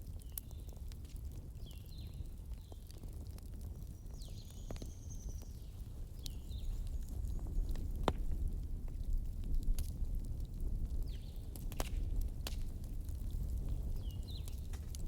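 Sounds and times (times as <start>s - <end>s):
campfire crackling: 0.0s - 15.0s
fire pop: 7.5s - 10.3s, 11.0s - 15.0s.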